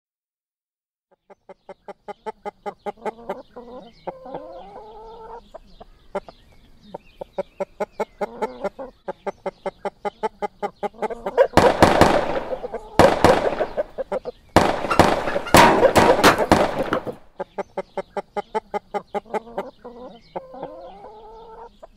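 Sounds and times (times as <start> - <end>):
chickens clucking: 1.1 - 21.9
chicken squawks: 10.2 - 17.8, 18.5 - 21.8
gunfire bursts: 11.4 - 14.0, 14.6 - 17.2.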